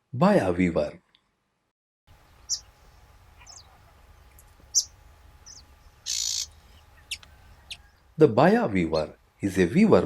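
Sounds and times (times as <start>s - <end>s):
faint outdoor background: 0.0s - 10.0s
high bird chirps: 2.4s - 2.8s, 3.4s - 8.0s.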